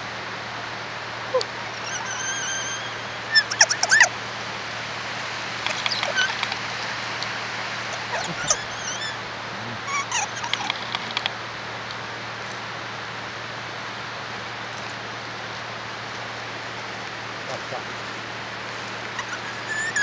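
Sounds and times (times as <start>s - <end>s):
soft chirps: 1.3s - 4.1s, 5.6s - 6.7s, 7.9s - 9.2s, 18.9s - 20.0s
parrot sharp sweeping calls: 1.3s - 4.2s, 5.6s - 6.8s, 7.8s - 9.2s, 9.8s - 11.2s, 18.9s - 20.0s.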